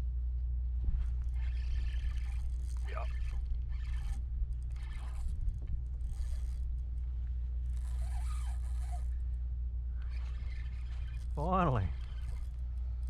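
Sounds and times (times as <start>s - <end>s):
steady low rumble: 0.0s - 7.9s, 8.6s - 10.1s
fishing reel gears whirring and clicking: 1.0s - 13.0s.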